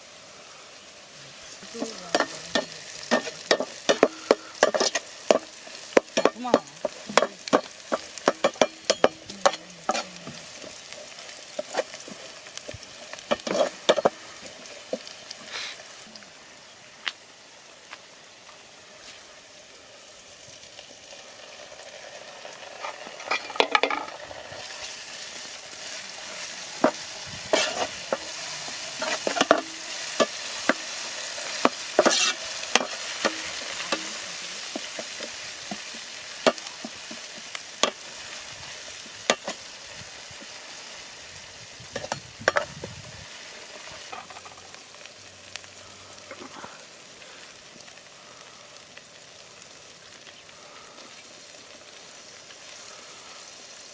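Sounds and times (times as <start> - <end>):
chicken sizzling in a pan: 0.0 - 53.9
utensil scraping a pan: 1.7 - 15.8, 26.3 - 38.1.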